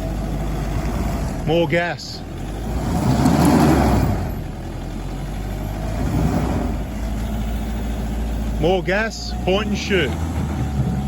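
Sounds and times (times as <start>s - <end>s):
engine revving hard: 2.5s - 4.5s, 5.7s - 7.0s.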